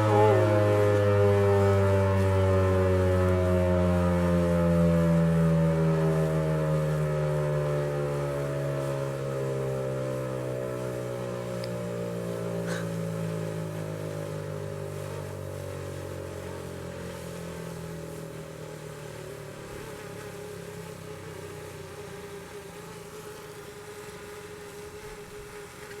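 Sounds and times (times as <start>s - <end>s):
dual-tone warning siren winding down: 0.0s - 12.6s.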